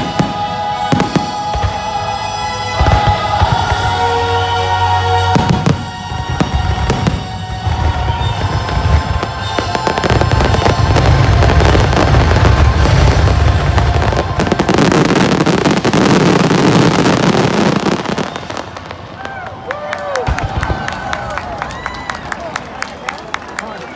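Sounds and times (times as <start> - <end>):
music: 0.0 - 17.4
fireworks bursts: 0.0 - 23.9.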